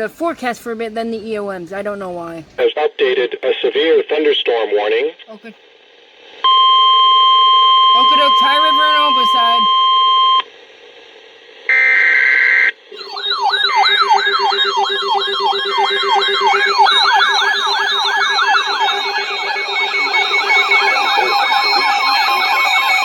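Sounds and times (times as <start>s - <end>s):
data header tones: 6.4s - 10.5s, 11.7s - 23.0s
siren-like attention signal: 6.4s - 10.5s, 11.6s - 23.0s.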